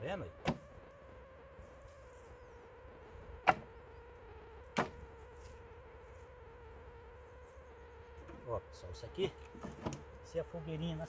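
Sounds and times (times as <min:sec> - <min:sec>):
faint steady whine: 0:00.0 - 0:11.0
sharp knocks: 0:03.4 - 0:03.7, 0:04.8 - 0:05.0.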